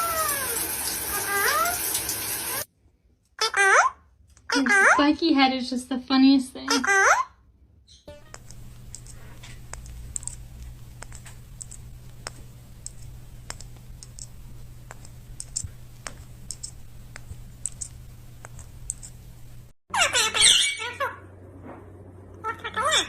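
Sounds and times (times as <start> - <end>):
low hum: 8.1 - 19.7
light clicks and taps: 8.3 - 19.5.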